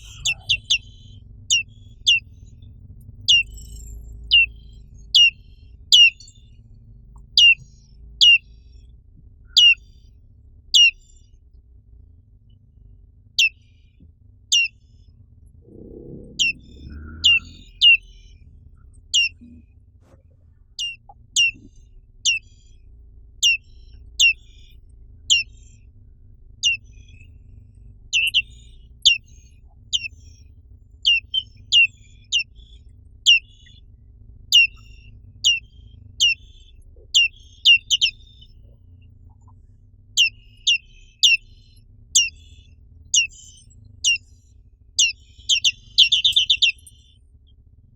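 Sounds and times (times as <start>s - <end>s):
bird chirping: 0.0s - 6.5s, 7.2s - 8.6s, 9.5s - 10.0s, 10.7s - 11.1s, 13.4s - 13.7s, 14.5s - 14.8s, 15.6s - 18.4s, 19.0s - 19.6s, 20.8s - 22.8s, 23.4s - 25.8s, 26.6s - 27.3s, 28.1s - 33.9s, 34.5s - 39.6s, 40.2s - 44.4s, 45.0s - 47.2s.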